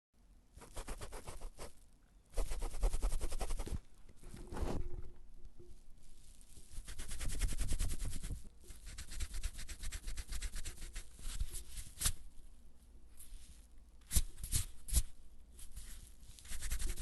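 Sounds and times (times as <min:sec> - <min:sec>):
eraser rubbing on paper: 0:00.6 - 0:01.8, 0:02.4 - 0:03.8, 0:06.7 - 0:12.2, 0:15.7 - 0:17.0.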